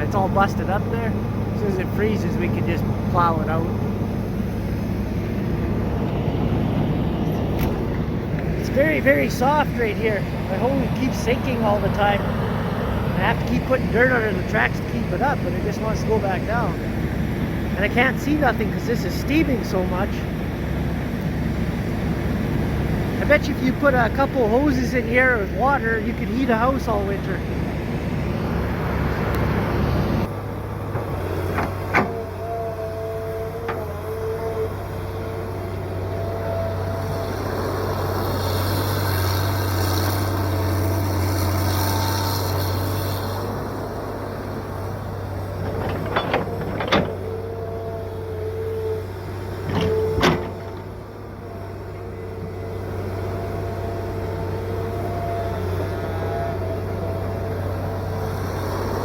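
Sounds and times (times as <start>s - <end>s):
excavator diesel drone: 0.0s - 59.0s
hydraulic whine: 0.0s - 59.0s
sharp clunks: 31.0s - 32.2s, 49.7s - 50.8s.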